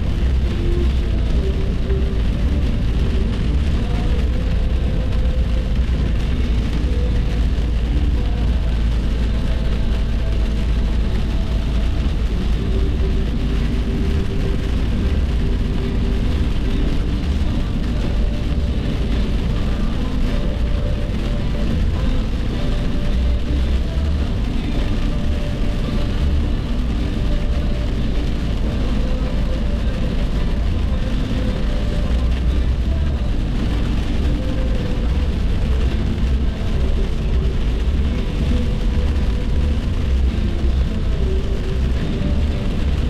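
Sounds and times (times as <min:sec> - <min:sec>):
car road and engine rumble: 0:00.0 - 0:43.0.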